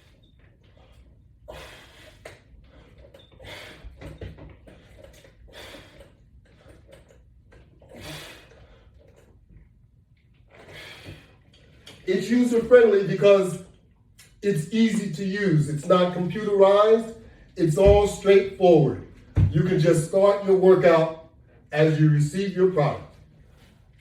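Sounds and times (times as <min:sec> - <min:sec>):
man breathing hard: 0:00.8 - 0:07.1, 0:07.8 - 0:09.2, 0:10.6 - 0:11.8.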